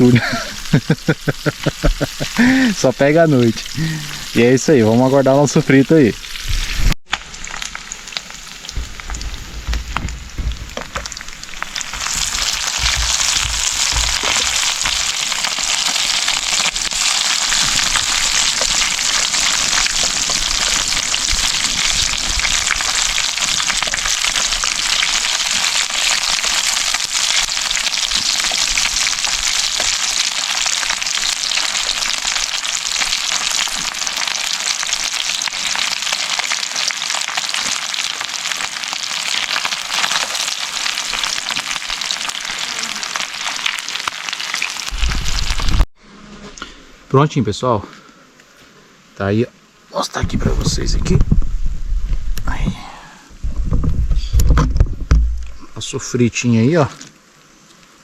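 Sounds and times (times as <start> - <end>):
fish frying in hot oil: 0.0 - 45.9
low knocks: 8.7 - 15.0.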